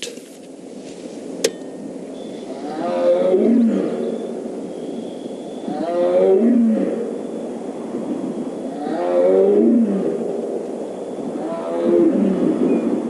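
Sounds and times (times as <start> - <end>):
tiger roars: 2.5 - 4.2, 5.6 - 7.1, 8.7 - 10.5, 11.3 - 12.6.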